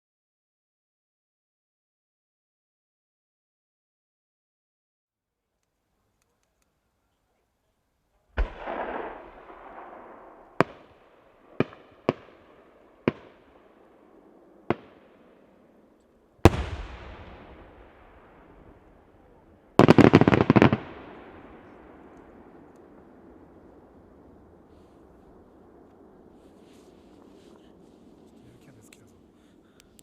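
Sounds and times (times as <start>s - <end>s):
fireworks bursting: 8.3s - 30.0s.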